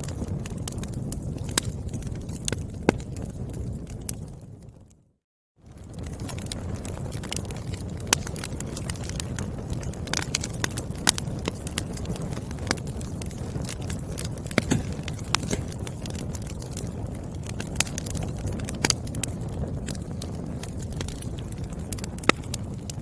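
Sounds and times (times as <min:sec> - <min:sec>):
firewood crackling: 0:00.0 - 0:05.0, 0:05.6 - 0:23.0
low rumble of fire: 0:00.0 - 0:23.0.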